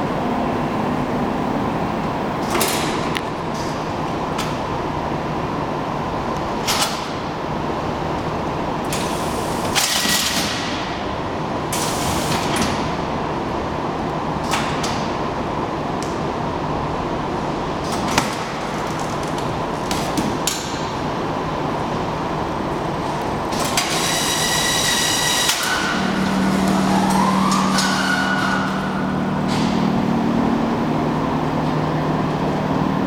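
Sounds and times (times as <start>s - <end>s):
strapping machine humming: 18.4s - 32.8s.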